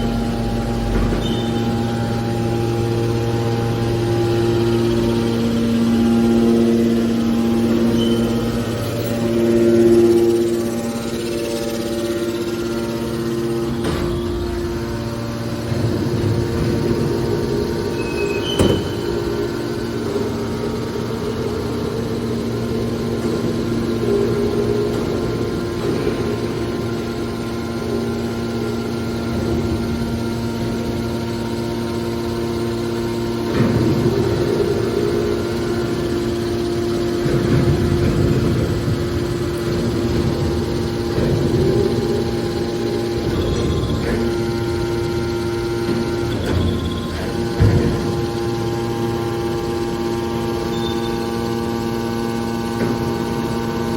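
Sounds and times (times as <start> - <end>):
hydraulic baler motor humming: 0.0 - 53.9.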